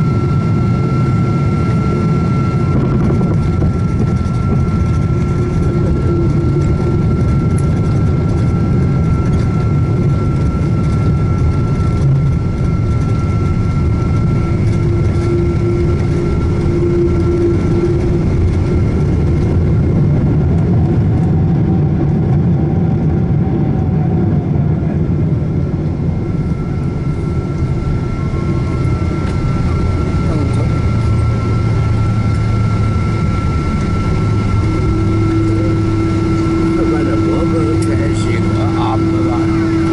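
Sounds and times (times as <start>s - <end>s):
jet engine cabin rumble: 0.0s - 39.9s
thin steady whine: 0.0s - 39.9s.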